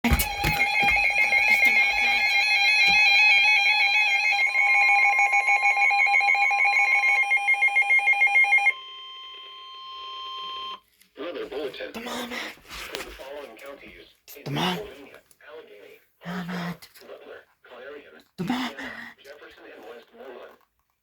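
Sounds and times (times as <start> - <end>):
pulsing electronic alarm: 0.0 - 10.8
steady warning tone: 0.0 - 10.8.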